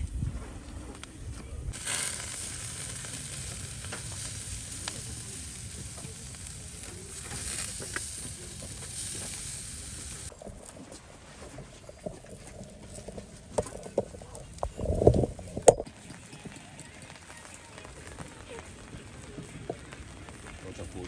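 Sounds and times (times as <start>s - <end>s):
food sizzling in a pan: 1.7s - 10.4s.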